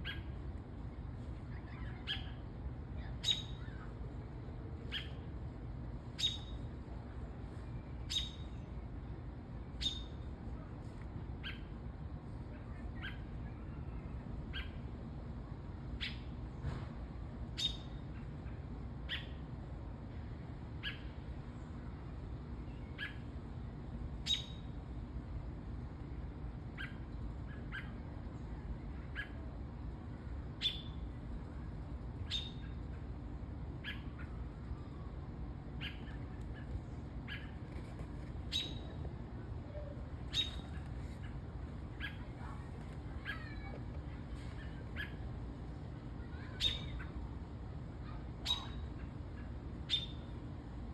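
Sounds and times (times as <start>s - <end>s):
small bird chirping: 3.0s - 3.9s, 4.9s - 5.2s, 6.2s - 6.7s, 8.0s - 8.6s, 9.8s - 10.2s, 17.6s - 18.3s, 24.2s - 24.7s, 30.6s - 31.0s, 32.2s - 32.8s, 33.8s - 34.3s, 35.8s - 36.7s, 37.3s - 37.8s, 38.5s - 39.0s, 40.3s - 41.3s, 46.4s - 47.1s, 48.4s - 48.8s, 49.9s - 50.3s.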